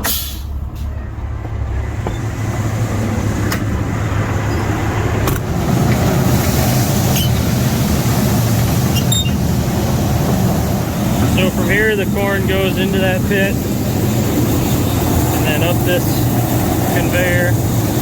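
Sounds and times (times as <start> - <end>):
truck engine running: 0.0 - 18.0
grain-handling machinery: 4.4 - 18.0.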